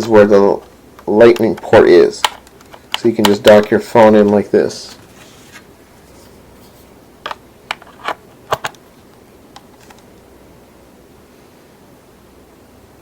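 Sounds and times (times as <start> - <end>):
sharp plastic clicks and taps: 1.3 - 4.4.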